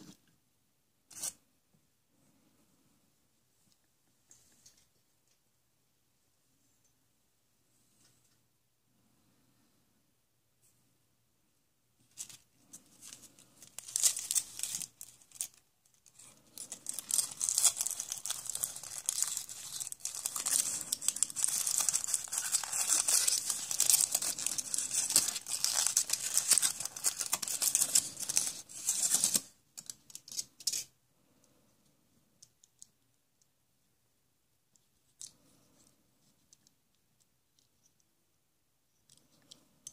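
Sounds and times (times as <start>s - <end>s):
wrapper tearing and crinkling: 13.0s - 29.5s.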